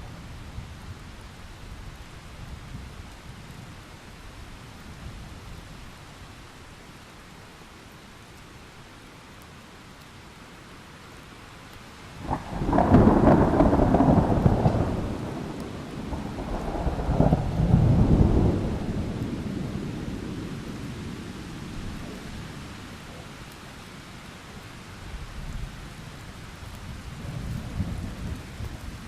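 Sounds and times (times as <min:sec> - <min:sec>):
steady rain: 0:00.0 - 0:29.0
thunder crack and rumble: 0:12.2 - 0:22.8, 0:26.7 - 0:29.0.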